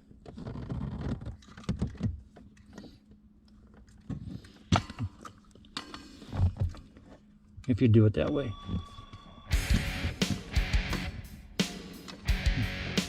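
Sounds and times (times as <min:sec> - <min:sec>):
hands and tools clicking and rattling: 0:00.0 - 0:03.0.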